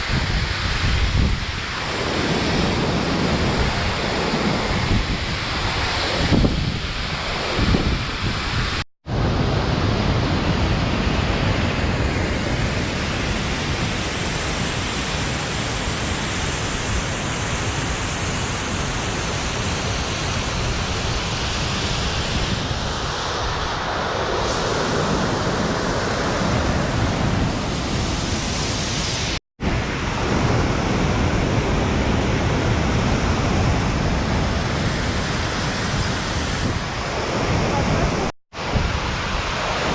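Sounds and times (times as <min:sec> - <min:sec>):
waterfall rushing: 0:11.2 - 0:39.9.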